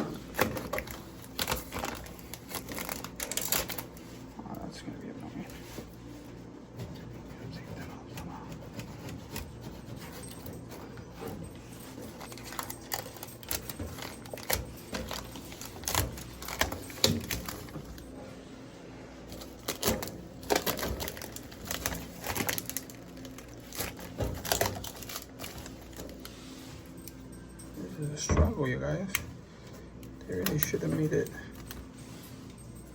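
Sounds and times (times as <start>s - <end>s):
plastic film peeling and crackling: 0.1s - 4.3s, 12.0s - 18.1s, 19.3s - 26.7s.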